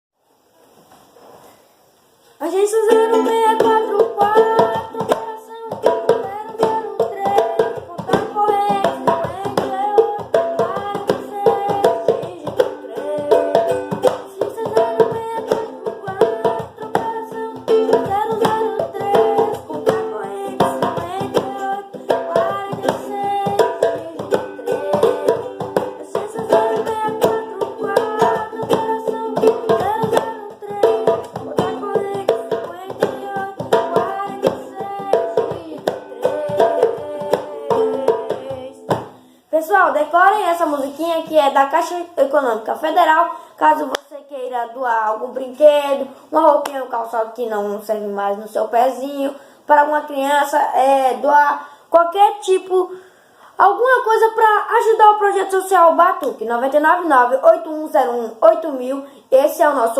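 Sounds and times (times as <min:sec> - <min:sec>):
person singing: 0:02.4 - 0:39.2
struck or strummed rhythm: 0:02.6 - 0:39.4.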